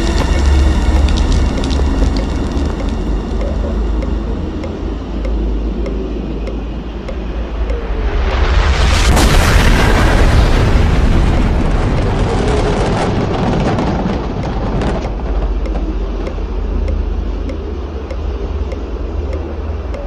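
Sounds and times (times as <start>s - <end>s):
low drone: 0.0s - 20.0s
explosion boom: 8.2s - 15.5s.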